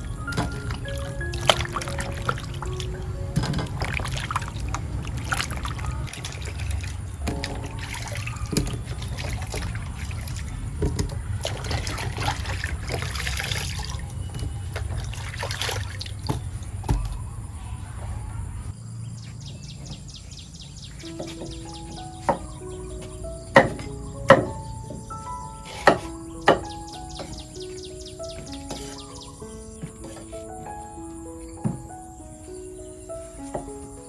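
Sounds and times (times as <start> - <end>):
water trickling and splashing: 0.0 - 18.7.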